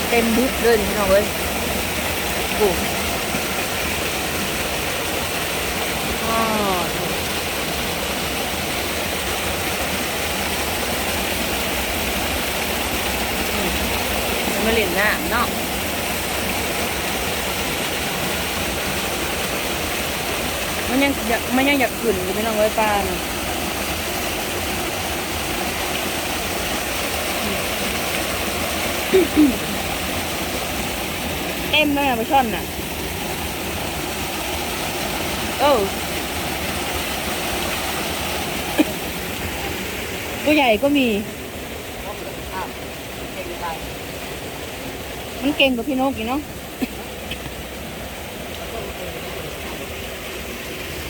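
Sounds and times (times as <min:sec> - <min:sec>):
floodwater rushing: 0:00.0 - 0:51.0
water pouring and splashing: 0:00.0 - 0:51.0.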